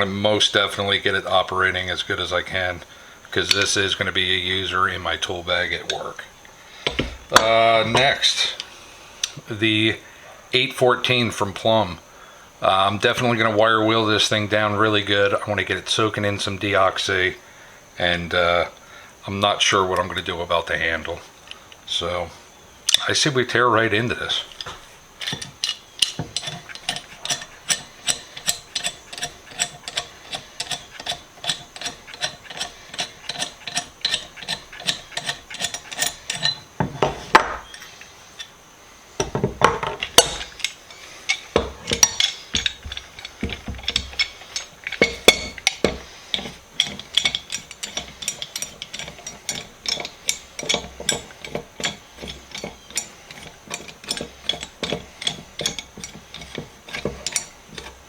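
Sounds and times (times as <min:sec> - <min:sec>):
ratchet-like metal clicking: 0:24.3 - 0:36.6, 0:40.0 - 0:58.0.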